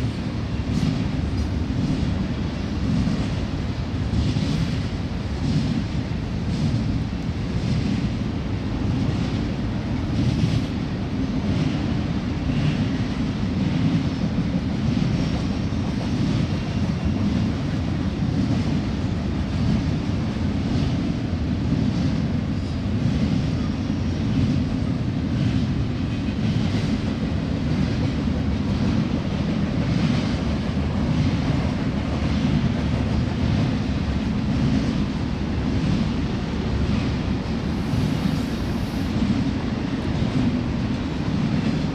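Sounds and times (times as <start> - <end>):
train wheels rumbling on rail: 0.0 - 41.9.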